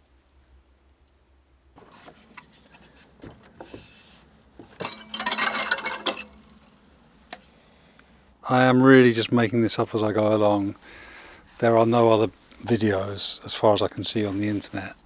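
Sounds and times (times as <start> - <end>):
metallic clatter: 4.7 - 6.9
small objects clinking: 4.8 - 6.9.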